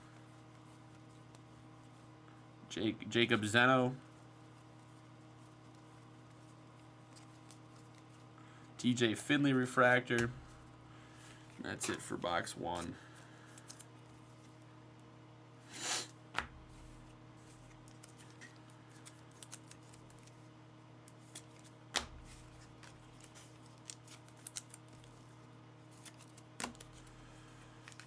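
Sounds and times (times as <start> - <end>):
card packaging rustling: 16.6 - 20.4, 21.2 - 28.0.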